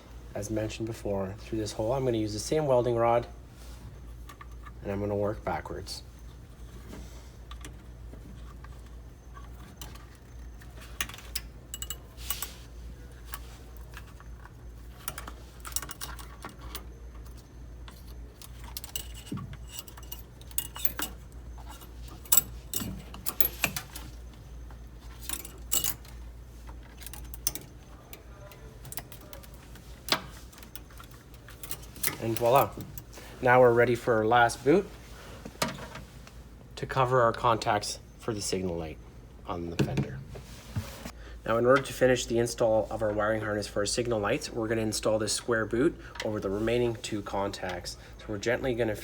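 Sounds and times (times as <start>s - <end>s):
steady low hum: 0.0s - 49.0s
rustling wires and tape: 1.6s - 36.7s
light metallic clinks: 9.8s - 12.7s, 18.0s - 24.1s, 25.1s - 26.2s.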